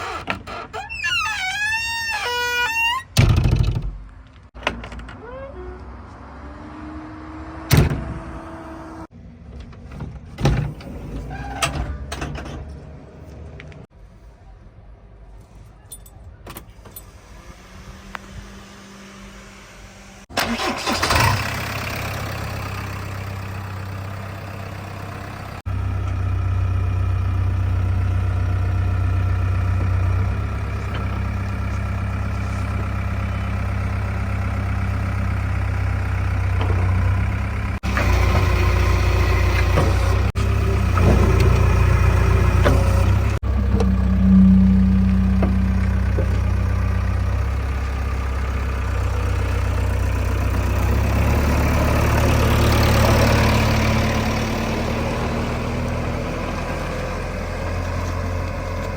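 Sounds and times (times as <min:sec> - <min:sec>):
diesel engine running: 0:17.1 - 0:58.9.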